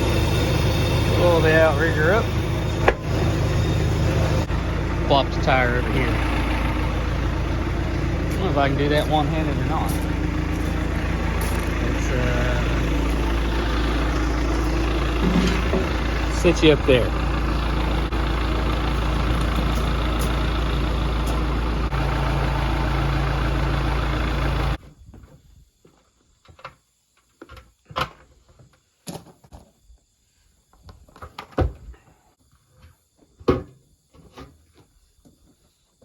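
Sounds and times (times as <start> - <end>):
diesel engine running: 0.0 - 24.8
metal knocks and clanks: 15.1 - 16.5.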